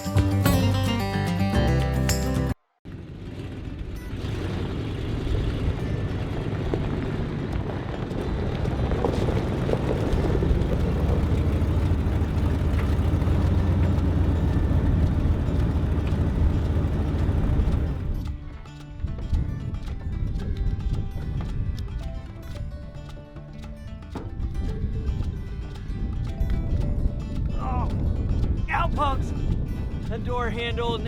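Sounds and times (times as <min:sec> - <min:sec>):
vehicle engine running: 0:02.9 - 0:18.5.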